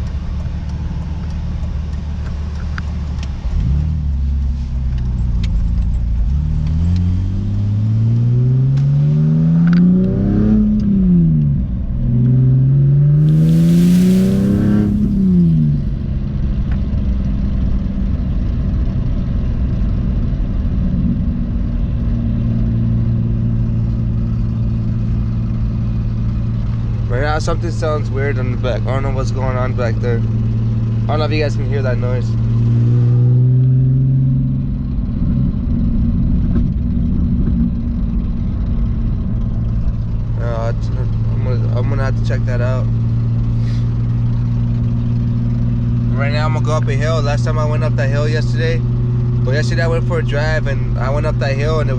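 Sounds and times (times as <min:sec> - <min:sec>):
car engine accelerating: 0:00.0 - 0:16.9
rushing hiss: 0:13.2 - 0:16.1.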